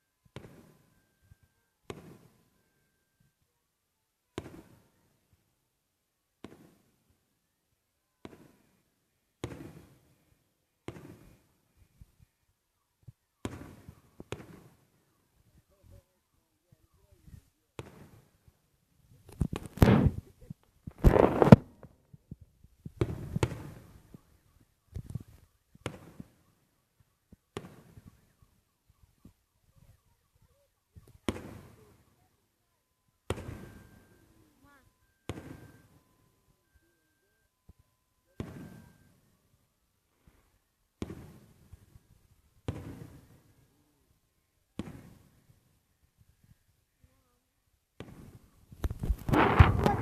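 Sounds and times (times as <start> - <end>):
firework shells booming: 19.6 - 20.2, 49.1 - 50.0.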